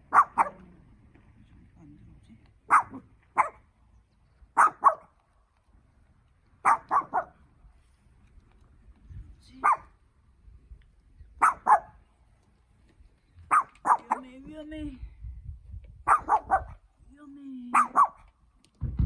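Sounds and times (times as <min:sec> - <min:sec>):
dog barking: 0:00.0 - 0:00.6, 0:02.7 - 0:03.6, 0:04.6 - 0:05.1, 0:06.6 - 0:07.4, 0:09.6 - 0:09.9, 0:11.4 - 0:12.0, 0:13.5 - 0:14.3, 0:16.1 - 0:16.8, 0:17.7 - 0:18.3.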